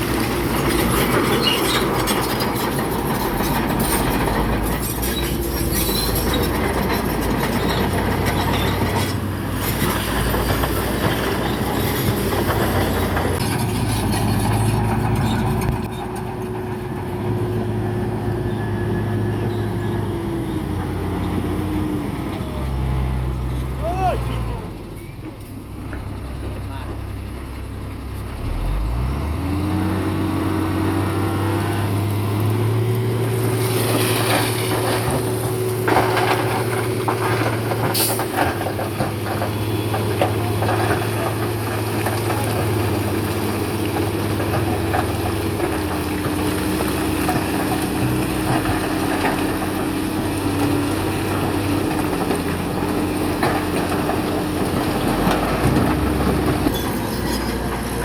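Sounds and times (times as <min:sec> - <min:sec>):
sharp squeal: 0:04.9 - 0:06.5, 0:56.7 - 0:57.6
bulldozer diesel engine revving: 0:28.0 - 0:58.0.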